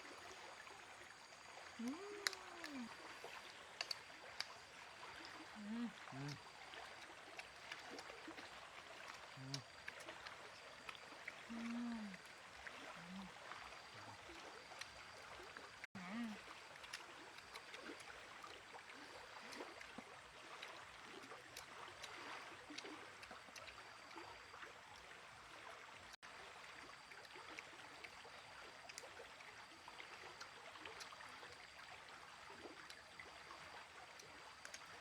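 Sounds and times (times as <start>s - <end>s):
small ticks: 1.8s - 4.6s, 6.2s - 12.4s, 19.0s - 24.6s, 27.2s - 29.2s, 30.2s - 31.7s, 34.0s - 35.0s.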